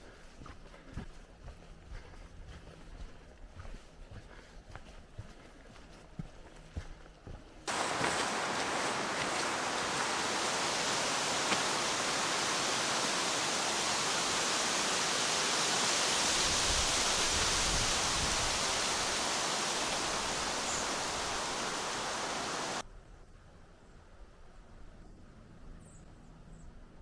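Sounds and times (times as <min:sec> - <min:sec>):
rushing flowing water: 0:07.7 - 0:22.8.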